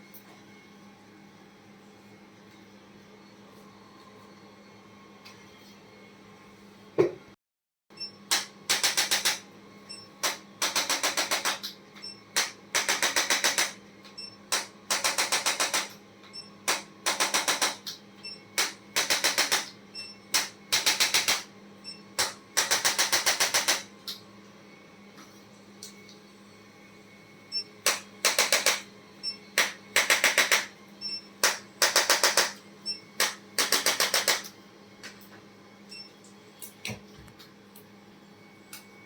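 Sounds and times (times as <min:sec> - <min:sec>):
rapid mechanical clicking: 0:08.3 - 0:09.4, 0:10.2 - 0:11.7, 0:12.4 - 0:13.8, 0:14.5 - 0:16.0, 0:16.7 - 0:18.0, 0:18.6 - 0:19.7, 0:27.8 - 0:28.8, 0:29.6 - 0:30.7, 0:31.4 - 0:32.6, 0:33.2 - 0:34.5.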